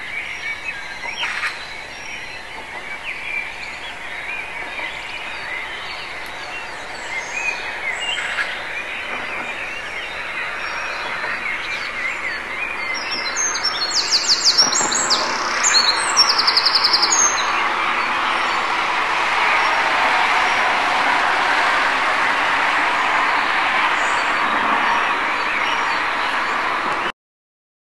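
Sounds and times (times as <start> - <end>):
songbirds chirping: 0.0 - 20.7
distant traffic hiss: 0.0 - 27.1.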